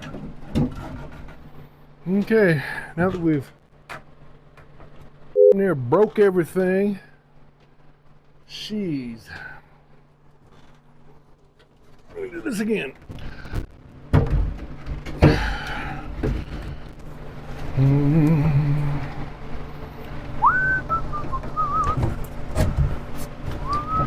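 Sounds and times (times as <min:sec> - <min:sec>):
man humming: 0:17.7 - 0:19.3
man whistling a tune: 0:20.4 - 0:22.0, 0:23.6 - 0:24.0.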